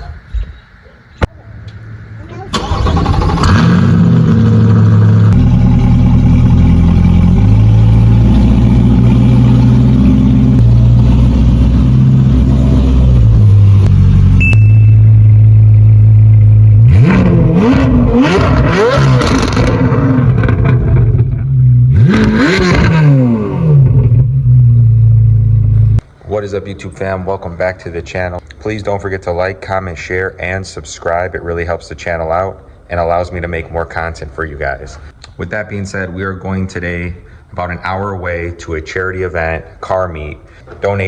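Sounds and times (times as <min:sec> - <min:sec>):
car engine idling and revving: 0:01.7 - 0:26.0.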